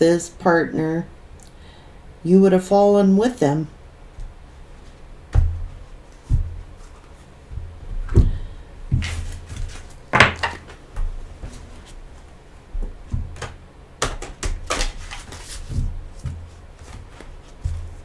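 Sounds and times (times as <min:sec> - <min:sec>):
cards shuffling: 0:13.4 - 0:18.0.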